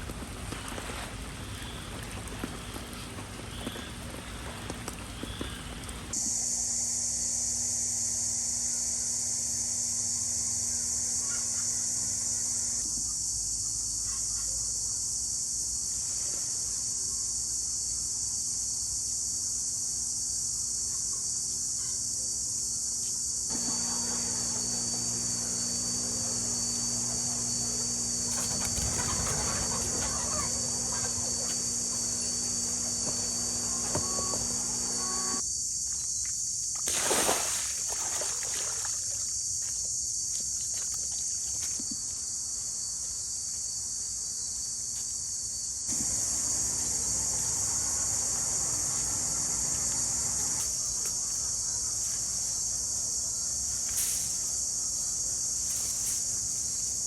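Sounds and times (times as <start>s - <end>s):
bird flutter or call: 0.0s - 6.1s, 23.5s - 35.4s
crickets chirping: 0.0s - 57.0s
chickens clucking: 23.5s - 35.4s.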